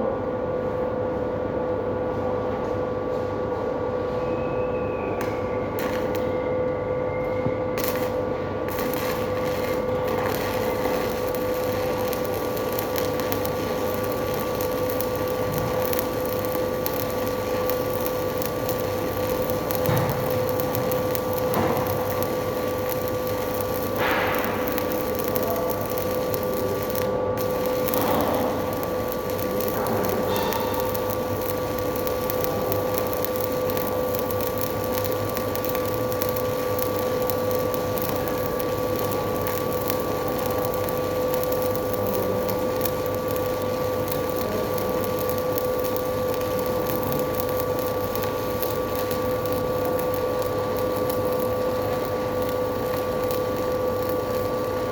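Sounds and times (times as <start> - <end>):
machine hum: 4.4 - 54.9
arc welding crackling hiss: 5.0 - 54.9
welding scratches: 5.2 - 6.3, 7.8 - 54.9.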